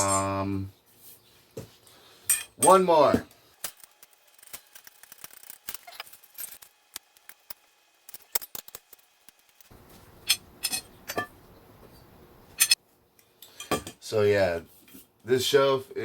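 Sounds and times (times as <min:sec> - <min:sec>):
metal parts clinking: 0:00.0 - 0:00.4, 0:03.6 - 0:06.7, 0:10.2 - 0:11.4, 0:12.6 - 0:12.8.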